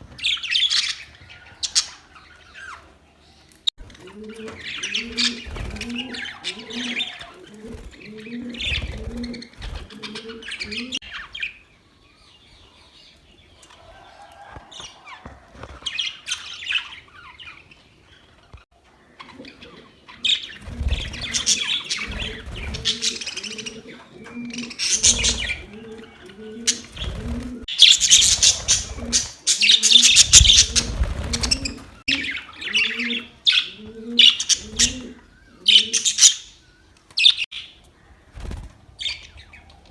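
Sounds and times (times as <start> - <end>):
budgerigars chirping and warbling: 4.2 - 11.6, 19.2 - 36.6.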